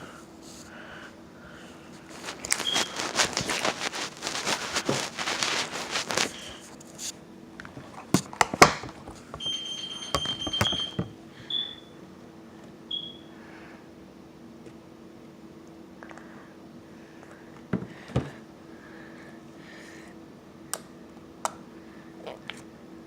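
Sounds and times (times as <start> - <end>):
slime crackling and popping: 2.0 - 6.6.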